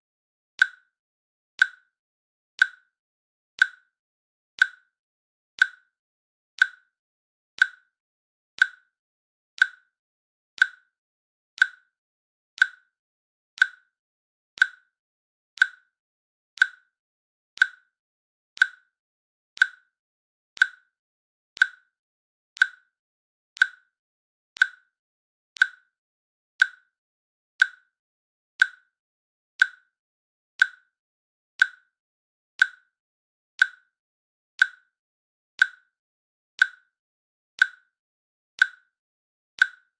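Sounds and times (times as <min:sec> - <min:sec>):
timer clicks: 0:00.6 - 0:00.9, 0:01.6 - 0:01.9, 0:02.6 - 0:02.9, 0:03.6 - 0:03.9, 0:04.6 - 0:04.9, 0:05.6 - 0:05.9, 0:06.6 - 0:07.0, 0:07.6 - 0:08.0, 0:08.6 - 0:09.0, 0:09.6 - 0:10.0, 0:10.6 - 0:11.0, 0:11.6 - 0:12.0, 0:12.6 - 0:13.0, 0:13.6 - 0:14.0, 0:14.6 - 0:15.0, 0:15.6 - 0:16.0, 0:16.6 - 0:17.0, 0:17.6 - 0:18.0, 0:18.6 - 0:19.0, 0:19.6 - 0:20.0, 0:20.6 - 0:21.0, 0:21.6 - 0:22.0, 0:22.6 - 0:23.0, 0:23.6 - 0:24.0, 0:24.6 - 0:25.0, 0:25.6 - 0:26.0, 0:26.6 - 0:27.0, 0:27.6 - 0:28.0, 0:28.6 - 0:29.0, 0:29.6 - 0:30.0, 0:30.6 - 0:31.0, 0:31.6 - 0:32.0, 0:32.6 - 0:33.0, 0:33.6 - 0:34.0, 0:34.6 - 0:35.0, 0:35.6 - 0:36.0, 0:36.6 - 0:37.0, 0:37.6 - 0:38.0, 0:38.6 - 0:39.0, 0:39.6 - 0:39.9.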